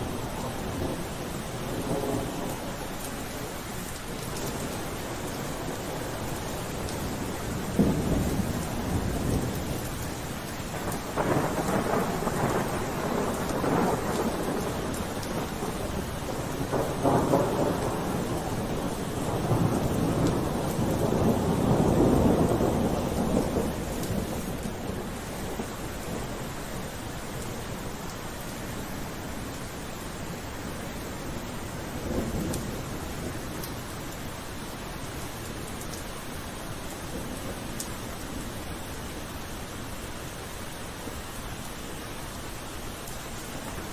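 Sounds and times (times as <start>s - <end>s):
thunder rumbling: 0.0s - 2.9s, 4.2s - 28.0s, 31.2s - 34.2s
steady rain: 0.0s - 43.9s.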